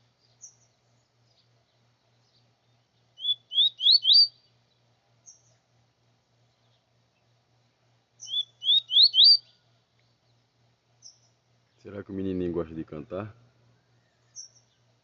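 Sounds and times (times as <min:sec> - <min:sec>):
songbird singing: 0:00.0 - 0:15.0.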